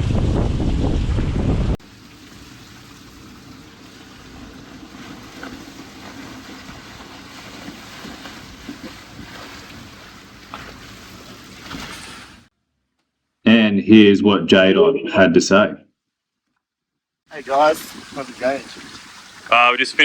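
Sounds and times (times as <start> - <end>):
water lapping around boat: 1.8 - 12.5, 17.3 - 20.0
light wind: 17.3 - 20.0.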